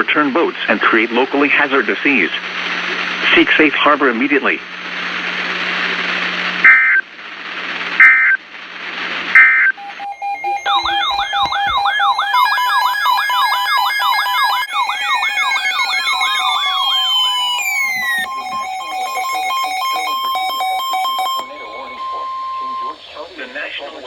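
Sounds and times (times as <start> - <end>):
radio hiss and hum: 0.0 - 24.0
electronic siren wailing: 9.4 - 23.0
screechy data tone bursts: 9.4 - 23.5.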